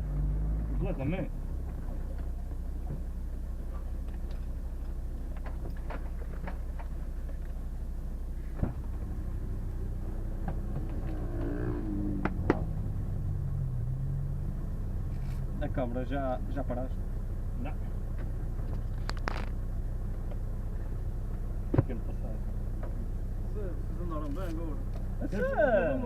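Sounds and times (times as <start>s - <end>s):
car engine low rumble: 0.0s - 26.0s
clicks and clatter from car: 3.7s - 7.6s, 18.1s - 19.6s.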